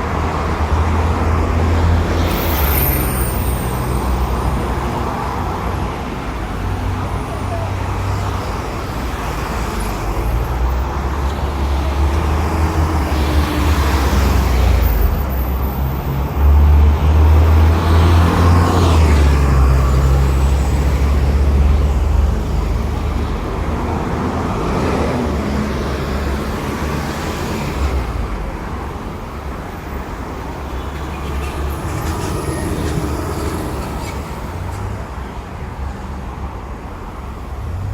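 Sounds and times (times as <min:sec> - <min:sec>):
buses and cars driving past: 0:00.0 - 0:37.9
distant traffic: 0:00.0 - 0:37.9
heavy vehicle passing: 0:29.2 - 0:35.7.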